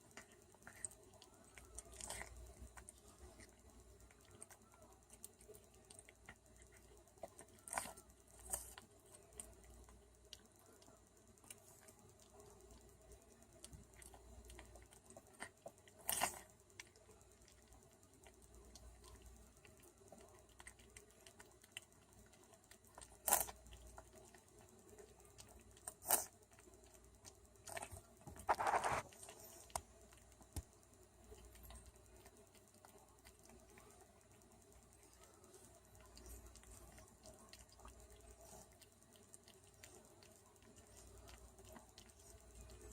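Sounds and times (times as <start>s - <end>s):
faint clicking: 0.0s - 42.9s.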